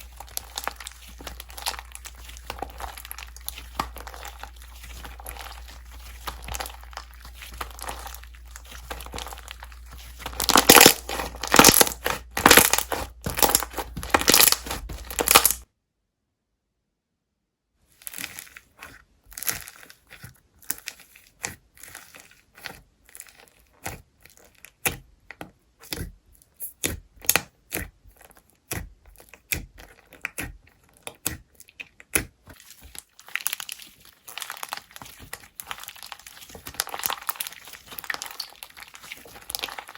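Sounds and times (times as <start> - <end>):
slime squished and stretched: 0.0 - 15.6, 18.0 - 39.9.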